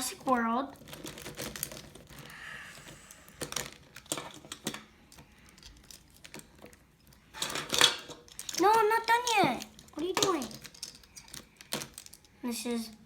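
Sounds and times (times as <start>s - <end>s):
plastic toys clicking: 0.0s - 13.0s.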